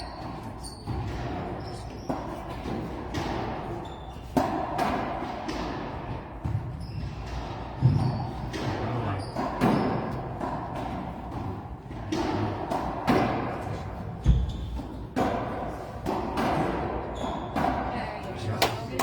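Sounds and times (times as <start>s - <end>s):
shoes squeaking on floor: 0.0s - 4.6s, 6.4s - 12.4s, 13.6s - 15.2s, 17.0s - 19.0s
ball cracking off racquets and walls: 2.0s - 17.9s.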